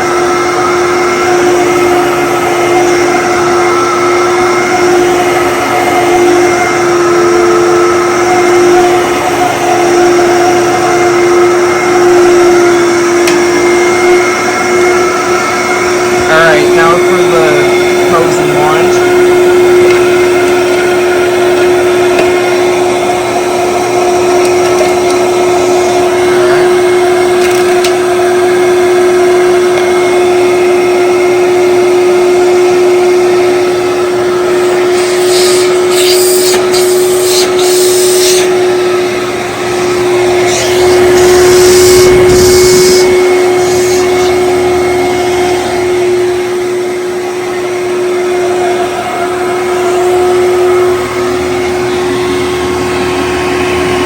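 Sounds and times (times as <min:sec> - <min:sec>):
vacuum cleaner running: 0:00.0 - 0:54.0
vacuum hissing sucking dirt: 0:02.7 - 0:26.7, 0:34.5 - 0:46.5.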